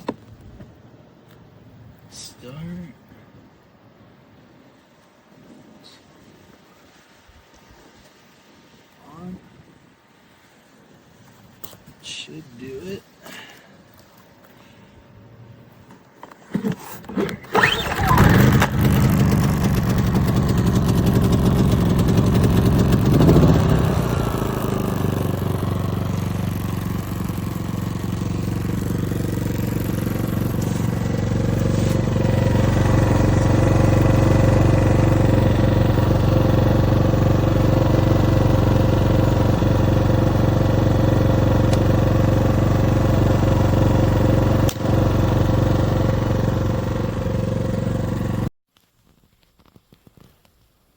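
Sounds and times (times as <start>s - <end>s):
starter cord pulls: 16.2s - 34.1s, 41.6s - 42.0s
generator engine running: 17.0s - 48.5s.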